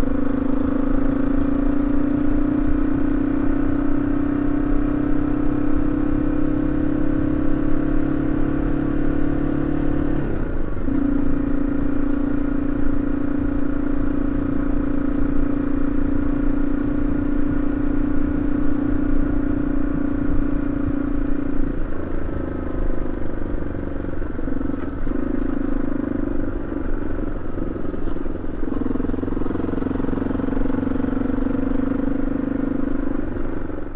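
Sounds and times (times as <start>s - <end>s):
motorcycle engine running: 0.0s - 33.9s.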